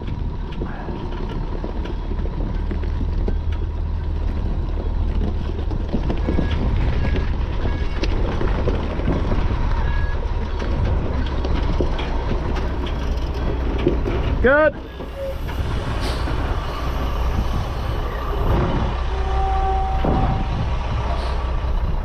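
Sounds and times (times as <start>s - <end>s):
metallic clanks and rattles: 0.0s - 16.6s
diesel engine running: 0.0s - 22.0s
short squeaks: 14.8s - 21.5s.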